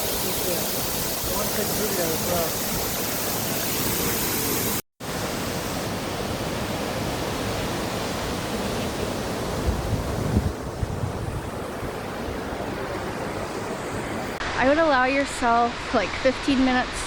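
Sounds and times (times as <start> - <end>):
waterfall rushing: 0.0 - 17.0
wind buffeting microphone: 7.1 - 14.4.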